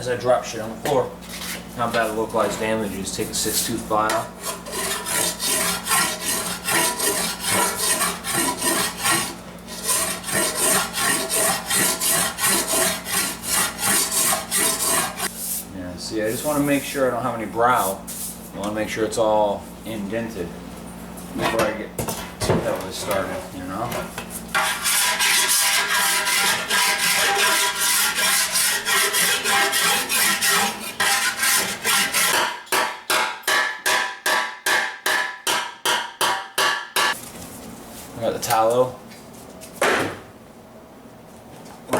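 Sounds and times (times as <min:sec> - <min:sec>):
hand file scraping sheet metal: 0:01.3 - 0:15.3, 0:24.5 - 0:32.9.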